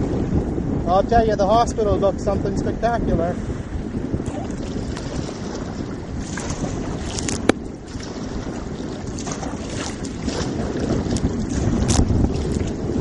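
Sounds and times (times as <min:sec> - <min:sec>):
wind buffeting microphone: 0:00.0 - 0:13.0
water sloshing and splashing: 0:03.5 - 0:13.0.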